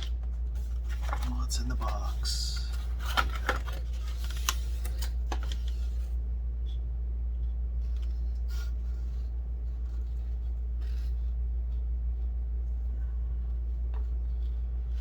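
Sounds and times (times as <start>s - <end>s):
packaging rustling: 0.0s - 6.0s
low steady hum: 0.0s - 15.0s.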